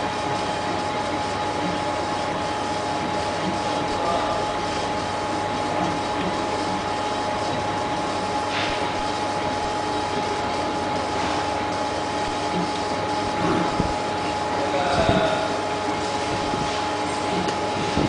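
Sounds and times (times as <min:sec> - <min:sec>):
laser engraving machine humming: 0:00.0 - 0:18.0.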